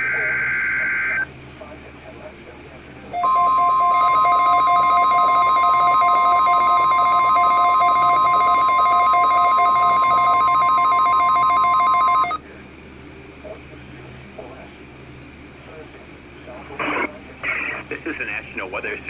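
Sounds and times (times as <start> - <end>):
faint radio hiss: 0.0 - 19.0
loud steady alarm tone: 3.2 - 12.4.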